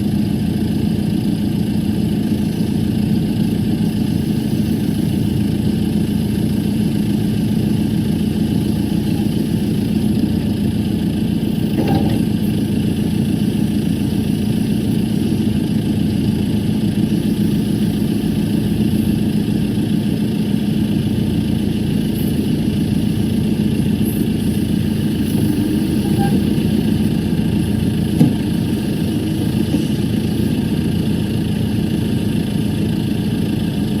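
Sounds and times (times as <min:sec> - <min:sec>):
diesel engine idling: 0:00.0 - 0:34.0.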